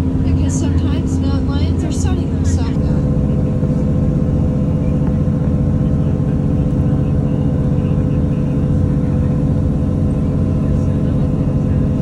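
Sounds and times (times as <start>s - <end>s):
train engine droning: 0.0s - 12.0s.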